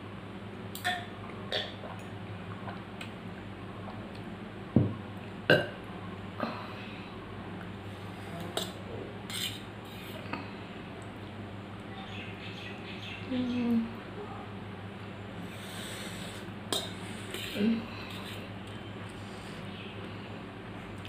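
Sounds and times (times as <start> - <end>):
woman burping: 5.5 - 5.7.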